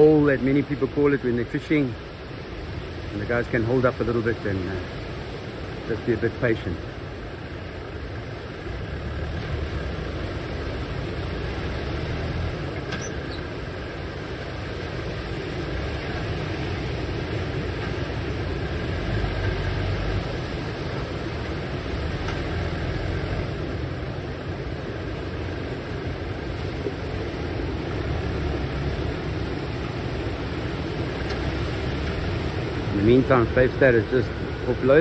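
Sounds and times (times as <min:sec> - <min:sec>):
surf breaking on beach: 0:00.0 - 0:35.0
wind rumbling on microphone: 0:00.0 - 0:35.0.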